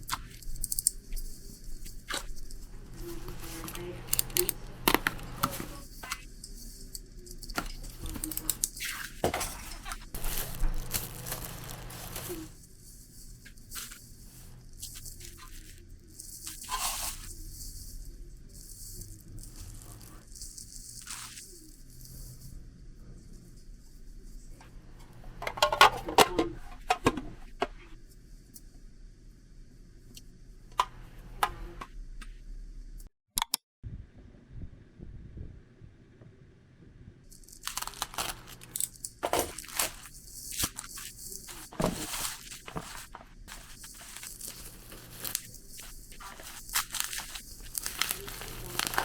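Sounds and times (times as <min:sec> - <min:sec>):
small objects clicking: 0:00.0 - 0:08.9, 0:09.8 - 0:12.6, 0:13.5 - 0:21.4, 0:37.3 - 0:49.0
rustling and crinkling: 0:00.0 - 0:28.2, 0:37.3 - 0:49.0
low steady hum: 0:01.0 - 0:20.4.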